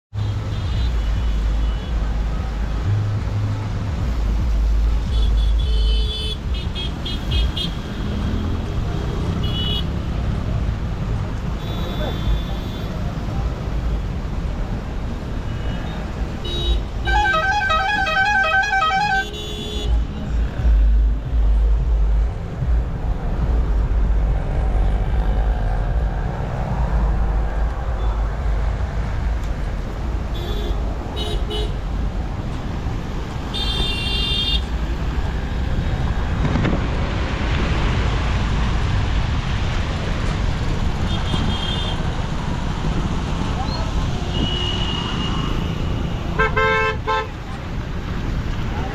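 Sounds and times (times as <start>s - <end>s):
road traffic rumble: 0.0s - 48.9s
warbling vehicle horn: 16.5s - 19.9s.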